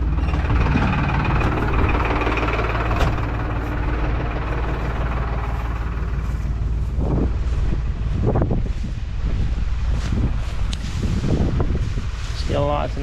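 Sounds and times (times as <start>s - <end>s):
diesel tractor engine idling: 0.0s - 9.9s.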